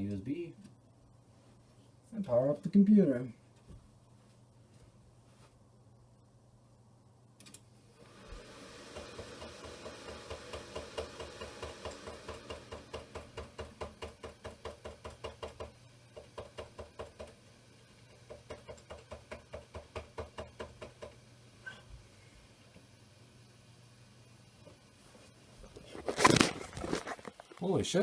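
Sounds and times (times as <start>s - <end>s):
computer fans spinning: 7.4s - 19.1s.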